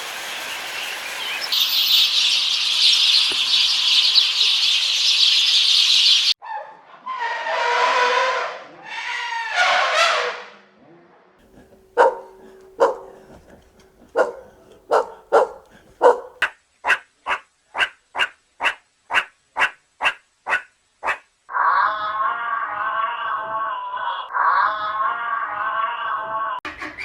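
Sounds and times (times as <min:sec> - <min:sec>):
dog barking: 0:11.5 - 0:21.2
animal calling: 0:11.5 - 0:23.2.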